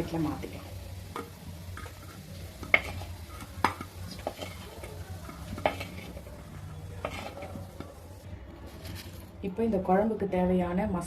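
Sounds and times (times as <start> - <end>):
oil sizzling: 0.0 - 9.3
metal spoon scraping a pan: 1.0 - 9.3.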